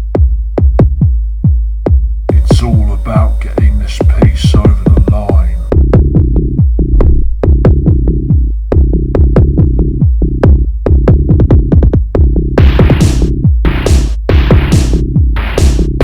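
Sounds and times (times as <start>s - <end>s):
electronic dance music: 2.3s - 5.7s, 13.9s - 15.9s.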